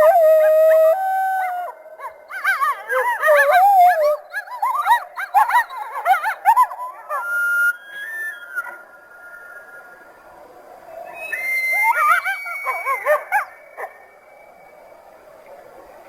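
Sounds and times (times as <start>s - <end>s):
coyotes yipping and howling: 0.0s - 16.0s.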